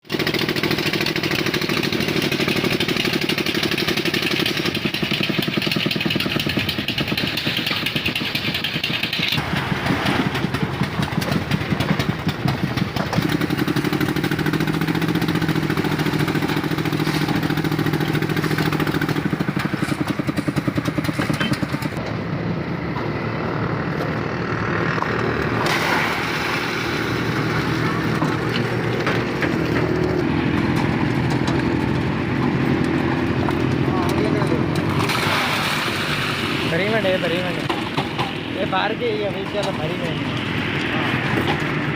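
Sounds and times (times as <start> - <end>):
motor engine running: 0.0 - 41.9.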